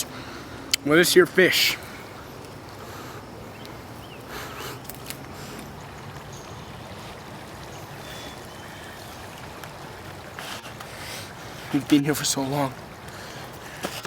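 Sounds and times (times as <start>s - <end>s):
stream rushing: 0.0s - 14.0s.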